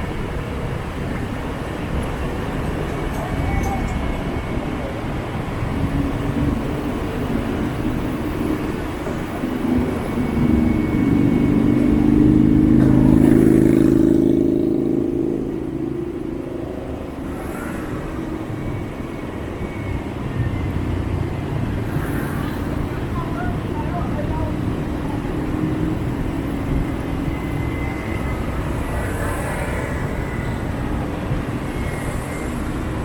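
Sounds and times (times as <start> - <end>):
motorbike engine and road rumble: 0.0 - 19.1
passing engine hum: 0.0 - 33.0.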